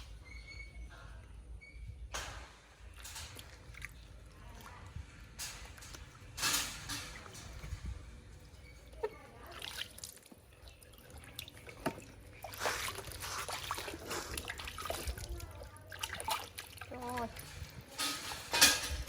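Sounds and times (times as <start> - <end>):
bath water splashing: 9.0 - 17.9.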